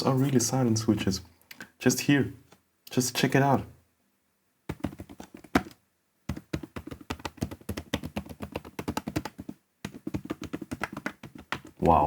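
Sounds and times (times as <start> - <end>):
fast keyboard typing: 4.7 - 11.8.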